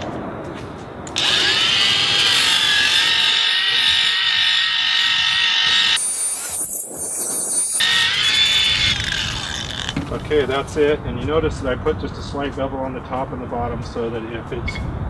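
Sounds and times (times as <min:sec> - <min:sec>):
angle grinder whining: 0:01.2 - 0:10.2.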